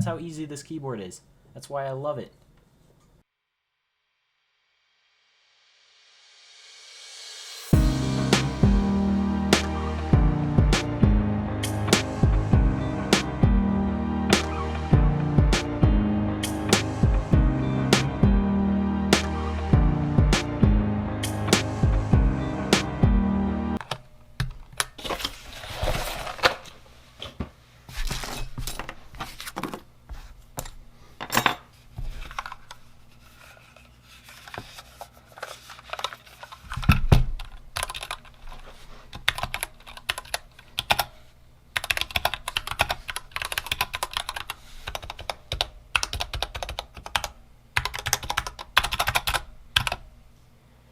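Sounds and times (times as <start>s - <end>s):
mechanical keyboard typing: 37.4s - 38.4s, 39.2s - 41.1s, 41.8s - 50.0s.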